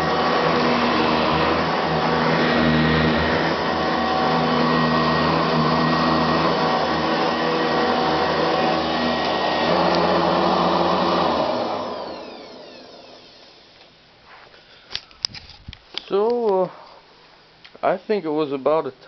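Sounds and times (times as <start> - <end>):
vacuum motor spinning down: 0.0 - 13.8
vacuum cleaner running: 0.0 - 13.9.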